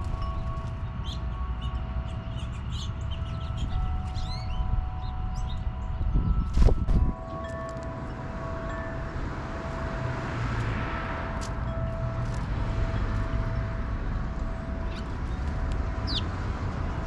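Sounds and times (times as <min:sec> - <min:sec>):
wind chime ringing: 0:00.0 - 0:17.0
vehicle passing: 0:07.2 - 0:17.0.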